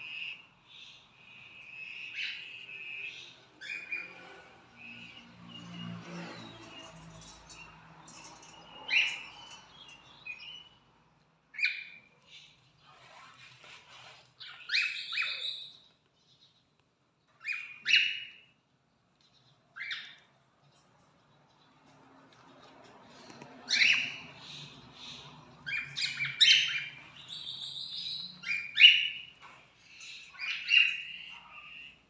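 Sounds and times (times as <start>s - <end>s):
cockatiels chirping: 0.0s - 5.2s, 6.3s - 10.8s, 11.5s - 12.6s, 14.4s - 15.9s, 17.4s - 18.5s, 19.8s - 20.3s, 23.2s - 32.0s.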